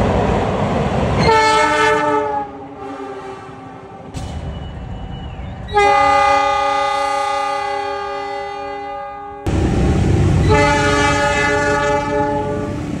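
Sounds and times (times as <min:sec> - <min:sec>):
train low rumble: 0:00.0 - 0:13.0
locomotive air horn chord: 0:01.2 - 0:03.8, 0:05.7 - 0:09.5, 0:10.4 - 0:12.8.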